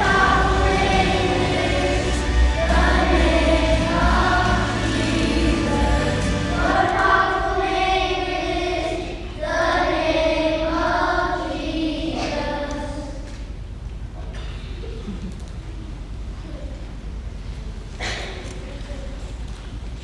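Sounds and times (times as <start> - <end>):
choir singing slowly: 0.0 - 13.3.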